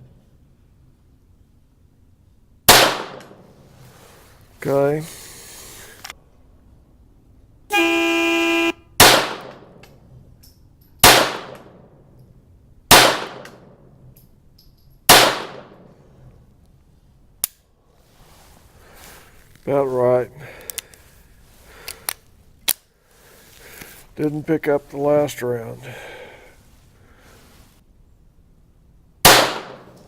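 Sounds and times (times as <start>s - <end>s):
pistol shots: 2.7s - 3.4s, 9.0s - 9.8s, 11.0s - 11.8s, 12.9s - 13.8s, 15.1s - 15.9s, 29.2s - 30.0s.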